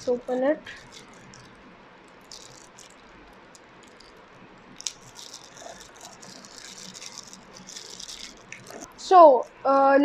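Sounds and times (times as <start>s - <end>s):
packaging rustling: 0.3s - 9.5s
light clicks of packaging: 0.7s - 8.9s.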